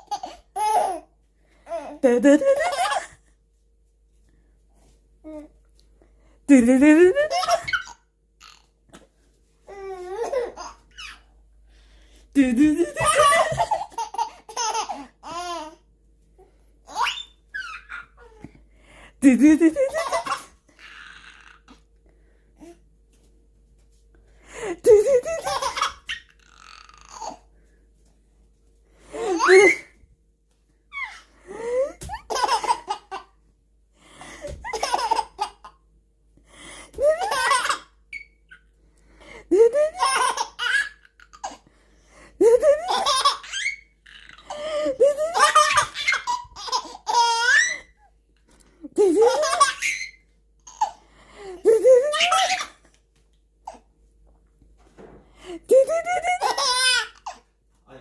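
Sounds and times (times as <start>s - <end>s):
baby laughing: 0.0s - 1.1s, 1.7s - 3.2s, 7.1s - 8.7s, 9.7s - 11.3s, 12.6s - 15.8s, 16.9s - 18.4s, 19.6s - 21.8s, 24.8s - 27.4s, 29.2s - 30.0s, 30.9s - 33.3s, 34.5s - 35.8s, 37.0s - 38.6s, 39.5s - 41.6s, 42.4s - 47.9s, 49.0s - 51.0s, 51.6s - 52.9s, 55.6s - 57.4s
baby squealing: 29.3s - 29.9s.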